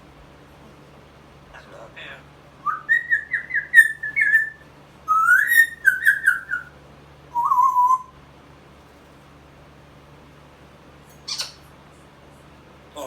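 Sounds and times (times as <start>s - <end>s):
parrot whistling: 2.6s - 6.7s, 7.3s - 8.1s, 11.2s - 11.6s.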